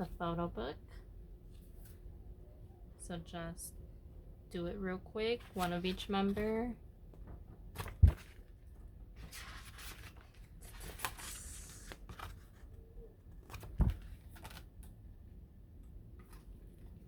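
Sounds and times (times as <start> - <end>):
book thump: 7.2 - 8.3
paper pages rustling: 7.8 - 8.6, 9.2 - 14.9.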